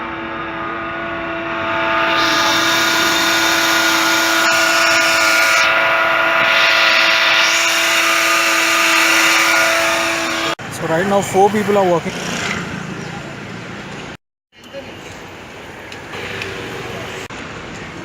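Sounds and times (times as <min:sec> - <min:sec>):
squealing whine: 0:00.0 - 0:10.6.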